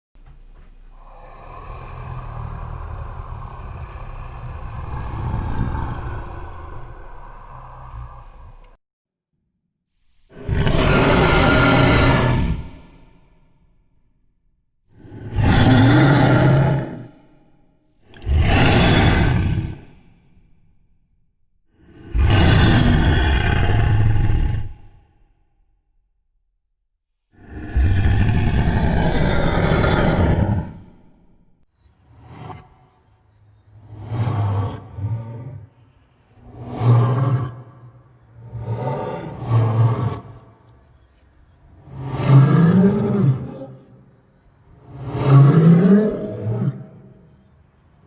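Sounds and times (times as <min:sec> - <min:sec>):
deep rasping monster growl: 0:00.4 - 0:08.8, 0:10.2 - 0:13.5, 0:14.9 - 0:20.6, 0:21.7 - 0:25.3, 0:27.4 - 0:31.4, 0:36.4 - 0:37.8, 0:38.4 - 0:40.9, 0:41.8 - 0:44.0, 0:44.8 - 0:47.2.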